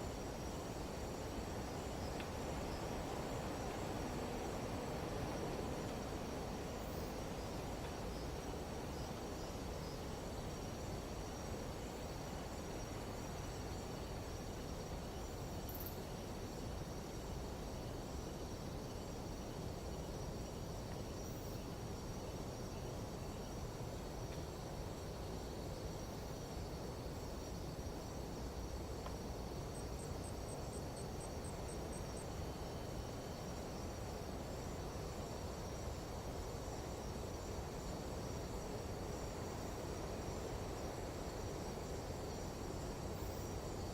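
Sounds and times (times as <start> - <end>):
insect trills: 0.0 - 43.9
low rush of wind: 0.0 - 43.9.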